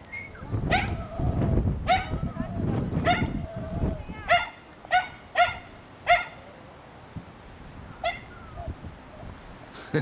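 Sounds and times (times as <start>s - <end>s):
small dog barking: 1.9s - 2.2s, 3.0s - 3.4s, 4.2s - 6.4s, 8.0s - 8.3s.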